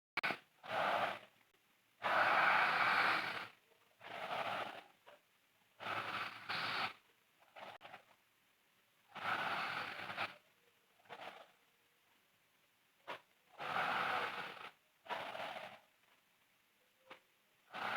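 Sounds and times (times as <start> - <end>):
woman snoring: 5.8 - 7.0, 13.6 - 15.8.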